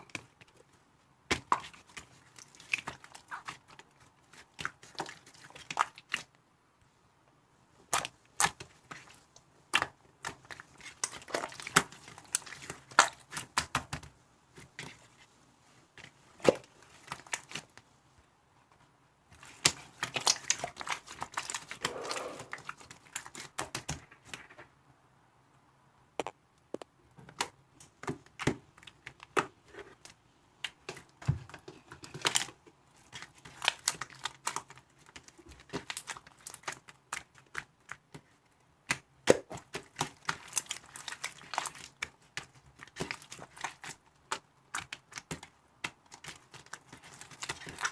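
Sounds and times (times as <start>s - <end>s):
crinkling: 26.2s - 47.9s.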